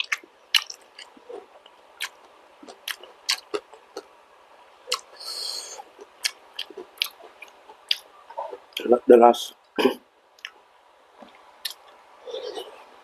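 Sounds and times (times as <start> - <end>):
wet chewing clicks and smacks: 0.0 - 4.1, 6.0 - 8.1, 10.4 - 10.6.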